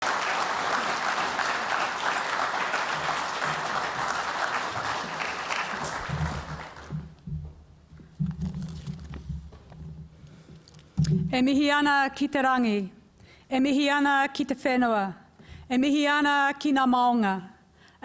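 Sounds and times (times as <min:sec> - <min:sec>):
audience applauding: 0:00.0 - 0:07.2.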